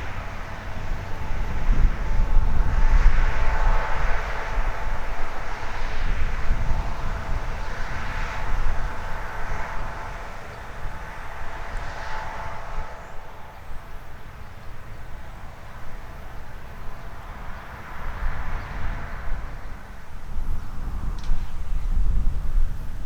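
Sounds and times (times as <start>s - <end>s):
harvest machinery droning: 0.0s - 23.0s.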